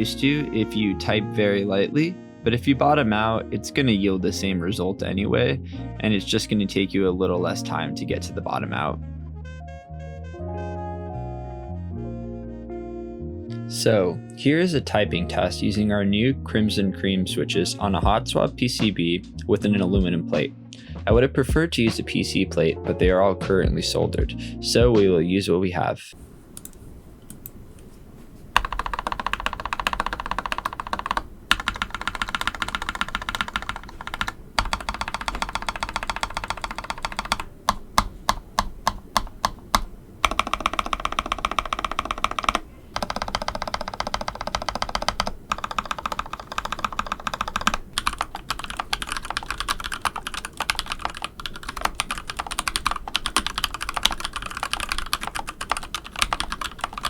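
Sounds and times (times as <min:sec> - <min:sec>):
fast typing on mechanical keyboard: 0:28.6 - 0:57.0.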